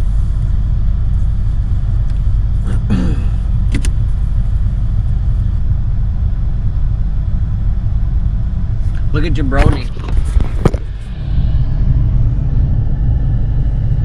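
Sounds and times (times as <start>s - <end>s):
van cabin rumble: 0.0s - 14.0s.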